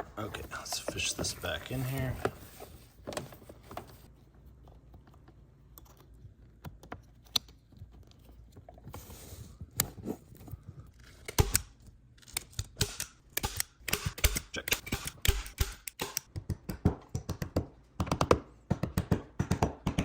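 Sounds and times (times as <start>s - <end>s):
cable rustling: 0.0s - 4.1s.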